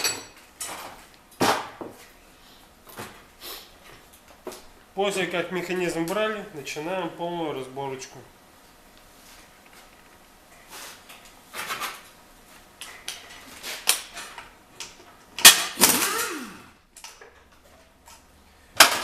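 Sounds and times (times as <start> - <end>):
metal tools and parts clinking: 0.0 - 1.0.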